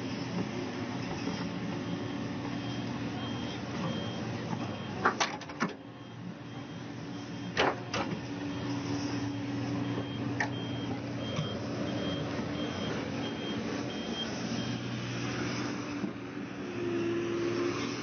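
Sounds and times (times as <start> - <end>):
diesel engine running: 0.0 - 17.6
reversing alarm beeping: 1.8 - 5.1, 5.7 - 15.0.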